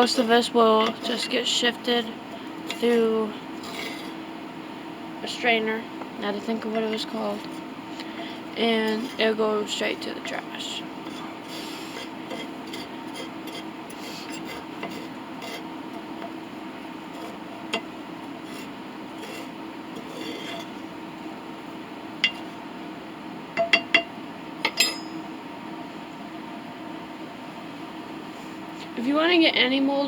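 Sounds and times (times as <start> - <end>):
steady low hum: 0.0 - 30.0
metal scrap scraping in container: 3.6 - 4.2, 11.0 - 15.7, 18.4 - 20.8.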